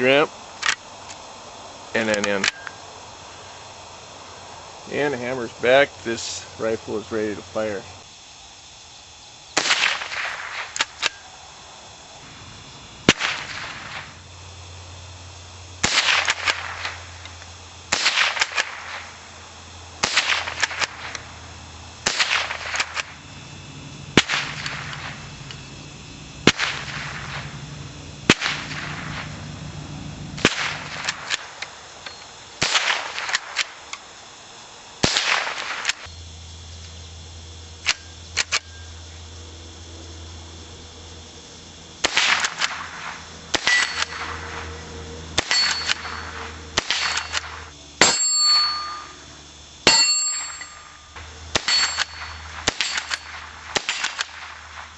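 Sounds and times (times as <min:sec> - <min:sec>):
rifle shots: 0:09.6 - 0:11.2, 0:12.2 - 0:14.2, 0:15.8 - 0:17.0, 0:17.9 - 0:19.1, 0:20.0 - 0:21.2, 0:22.0 - 0:23.2, 0:24.1 - 0:25.5, 0:26.4 - 0:29.6, 0:30.3 - 0:31.6, 0:32.6 - 0:33.8, 0:35.0 - 0:36.1, 0:42.0 - 0:44.7, 0:45.4 - 0:48.2, 0:51.5 - 0:54.9.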